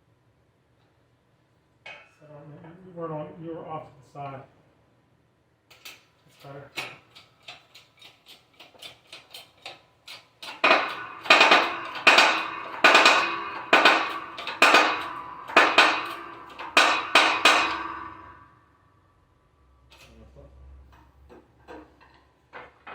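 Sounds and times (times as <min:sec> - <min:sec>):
hammer striking metal: 0:10.1 - 0:18.8.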